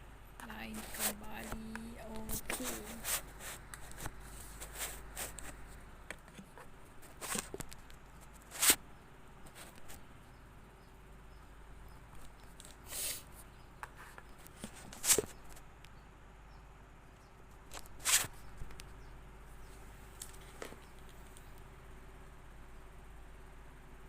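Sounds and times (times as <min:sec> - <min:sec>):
clicks and rustles: 0:00.7 - 0:08.8, 0:09.4 - 0:10.1, 0:13.8 - 0:15.7, 0:17.5 - 0:19.0, 0:19.7 - 0:21.6.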